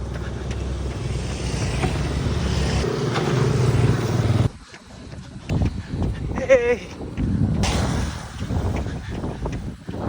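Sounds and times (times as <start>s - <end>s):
vehicle engine running: 0.0s - 4.5s.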